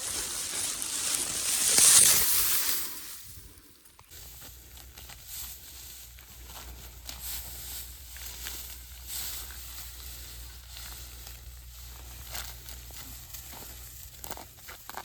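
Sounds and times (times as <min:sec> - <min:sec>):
faint crackles: 0:00.0 - 0:04.1
dry wheat sheaves rustling: 0:00.0 - 0:15.0.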